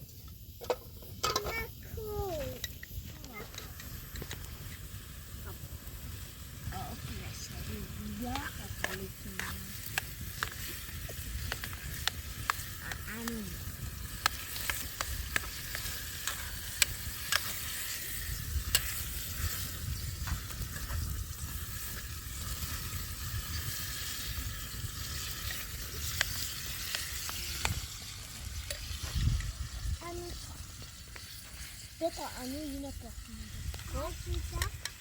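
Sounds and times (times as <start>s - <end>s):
food sizzling in a pan: 0.0s - 35.0s
sharp clicks and ticks: 7.1s - 20.9s, 23.6s - 35.0s.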